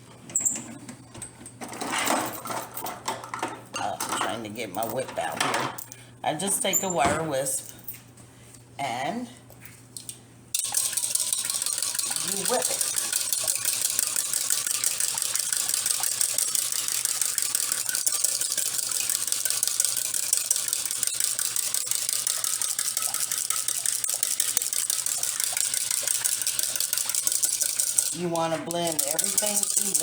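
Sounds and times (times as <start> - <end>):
wire whisk rattling in bowl: 10.5 - 30.0.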